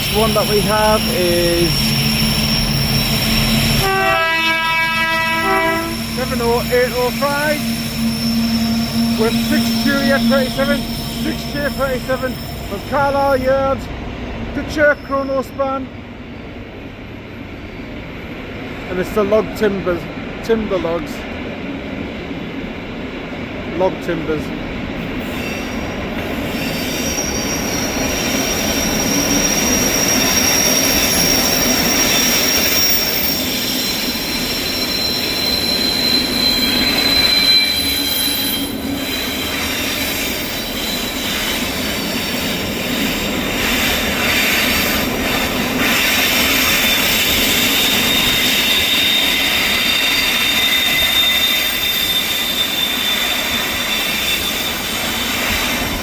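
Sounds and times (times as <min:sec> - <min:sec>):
train wheels squealing: 0:00.0 - 0:04.1, 0:05.3 - 0:13.7, 0:14.7 - 0:15.8, 0:25.2 - 0:56.0
train rumble: 0:00.0 - 0:56.0.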